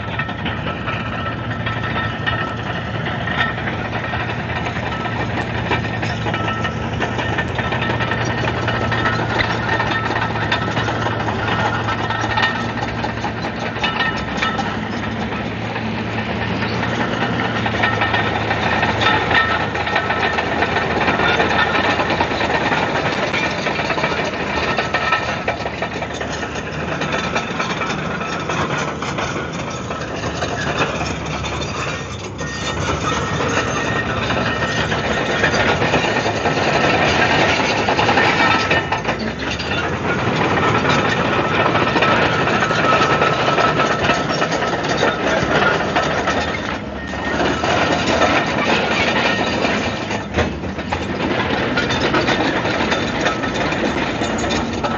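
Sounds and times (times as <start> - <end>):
bulldozer diesel engine running: 0.0 - 54.9.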